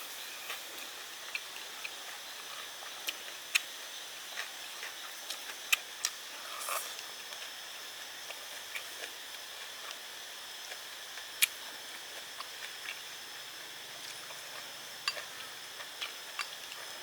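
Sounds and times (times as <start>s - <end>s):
steady high hiss: 0.0s - 1.4s.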